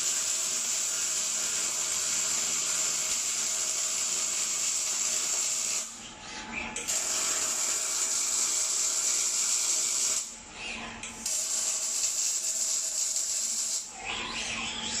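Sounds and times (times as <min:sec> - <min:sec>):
welding arc hissing: 0:00.0 - 0:05.9, 0:11.3 - 0:13.8.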